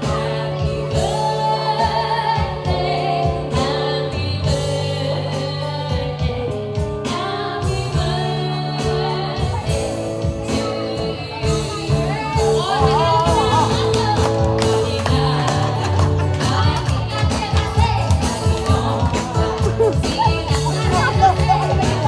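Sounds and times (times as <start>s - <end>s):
musical backing with bass line: 0.0s - 22.0s
person singing: 10.5s - 22.0s.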